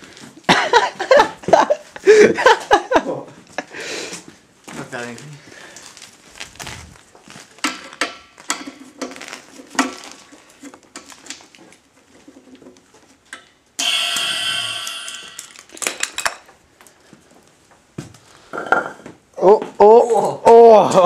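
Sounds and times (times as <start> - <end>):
loud hissing rush with ringing: 13.8 - 15.8.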